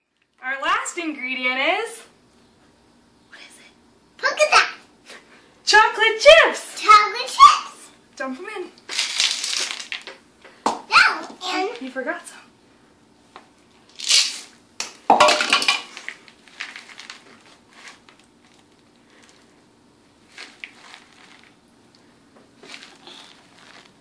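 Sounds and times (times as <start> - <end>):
chocolate chips clattering into bowl: 8.9 - 10.2, 15.1 - 17.3.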